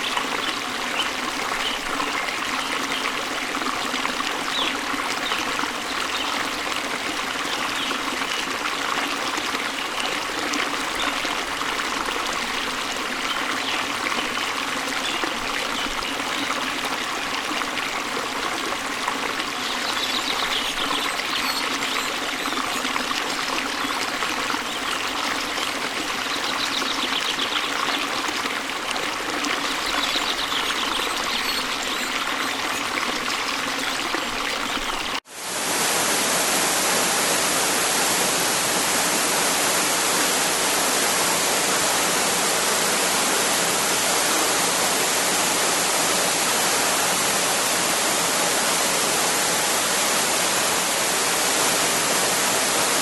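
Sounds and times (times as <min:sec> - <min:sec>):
waterfall rushing over rocks: 0:29.6 - 0:53.0.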